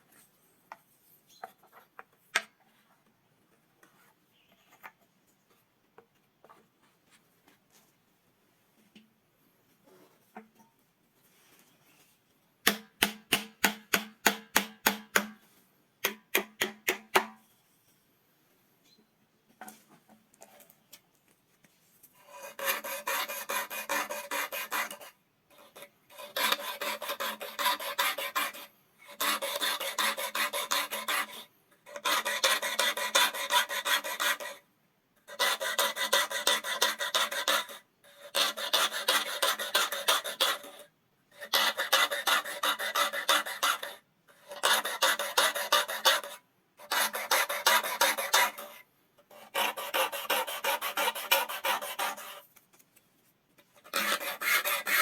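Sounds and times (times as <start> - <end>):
sharp clicking sanding strokes: 22.2 - 34.6, 35.3 - 40.8, 41.4 - 52.5, 53.8 - 55.0.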